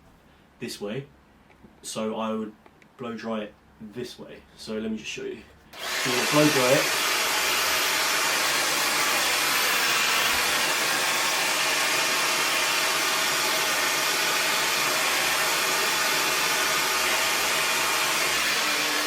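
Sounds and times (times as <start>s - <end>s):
hair dryer blowing: 5.8s - 19.0s.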